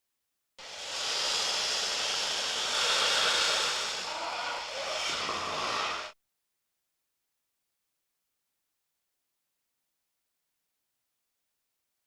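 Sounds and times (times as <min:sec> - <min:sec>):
hiss-like rushing noise: 0:00.6 - 0:06.2.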